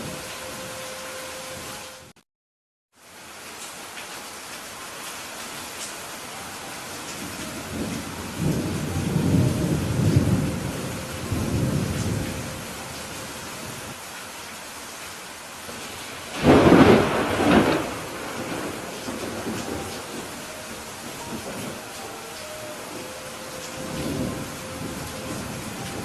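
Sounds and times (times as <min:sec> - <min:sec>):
steady rain: 0:00.0 - 0:02.2, 0:02.9 - 0:26.0
thunder rumbling: 0:07.2 - 0:14.0, 0:15.8 - 0:26.0
sharp thunderclap: 0:16.3 - 0:20.3.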